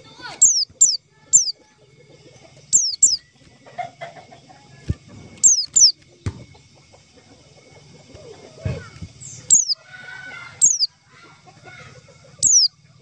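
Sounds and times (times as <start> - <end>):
bird calls sweeping down: 5.4 - 5.9, 9.5 - 9.8.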